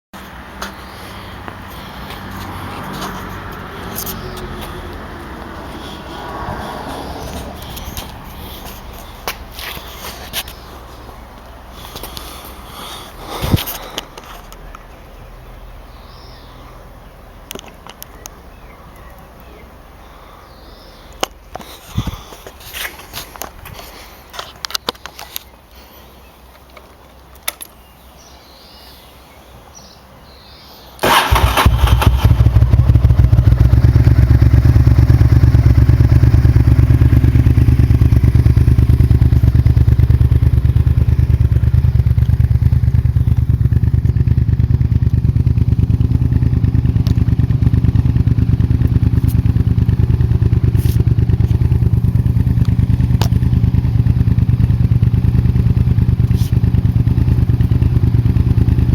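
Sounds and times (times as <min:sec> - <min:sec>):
motorcycle engine starting and idling: 0:00.7 - 0:15.2, 0:31.0 - 0:58.9.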